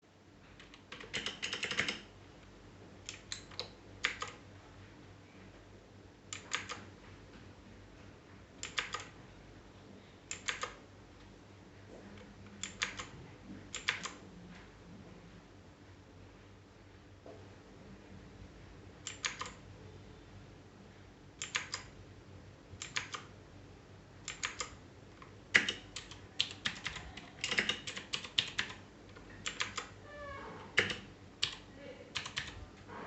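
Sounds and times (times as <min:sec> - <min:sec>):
mechanical keyboard keys clicking: 0:00.6 - 0:02.1, 0:03.1 - 0:04.4, 0:06.3 - 0:06.8, 0:08.6 - 0:09.1, 0:10.3 - 0:10.8, 0:12.6 - 0:13.1, 0:13.7 - 0:14.2, 0:19.0 - 0:19.6, 0:21.4 - 0:21.9, 0:22.8 - 0:23.3, 0:24.2 - 0:30.0, 0:30.8 - 0:32.6.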